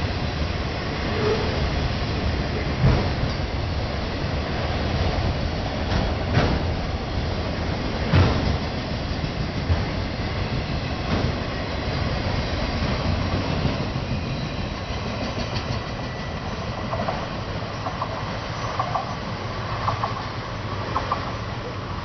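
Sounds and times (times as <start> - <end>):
freight train rumbling past: 0.0 - 22.0
wheels clacking over rail joints: 2.2 - 3.8, 4.5 - 21.9.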